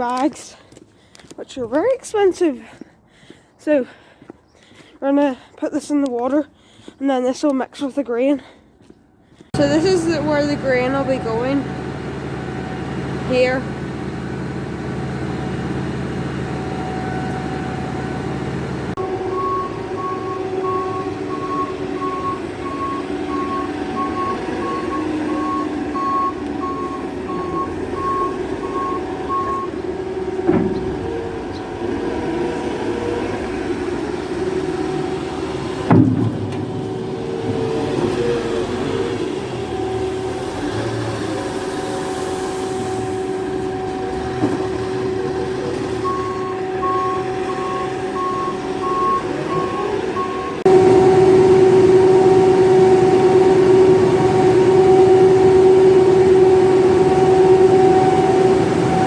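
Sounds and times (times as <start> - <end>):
vehicle engine running: 9.5 - 59.0
reversing alarm beeping: 9.6 - 31.4, 34.4 - 59.0
sharp knocks: 35.8 - 37.7.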